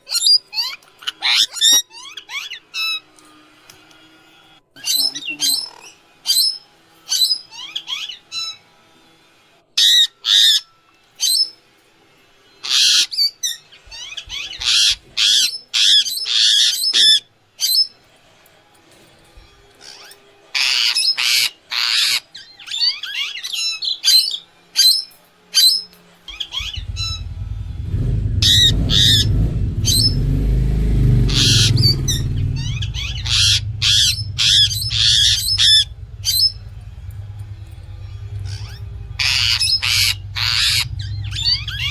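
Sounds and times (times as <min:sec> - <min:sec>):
parrot calling: 0:04.8 - 0:08.6, 0:12.6 - 0:17.9, 0:19.9 - 0:41.9
low rumble: 0:26.6 - 0:41.9.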